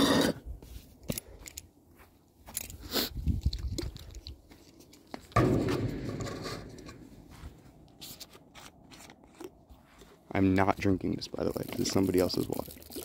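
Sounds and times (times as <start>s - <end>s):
scraping crunch: 0.0s - 12.4s.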